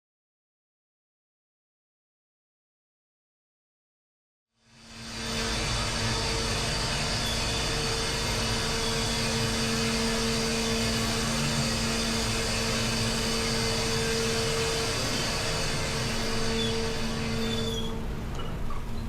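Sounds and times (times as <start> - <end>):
engine drone: 4.6 - 19.0
wide hiss: 4.9 - 17.7.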